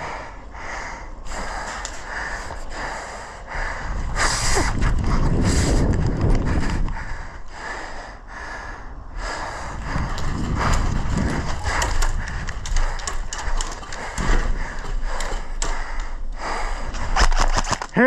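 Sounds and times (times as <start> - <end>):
low rumble: 0.0 - 17.2
footsteps and gear clatter: 4.0 - 7.4, 9.2 - 18.0.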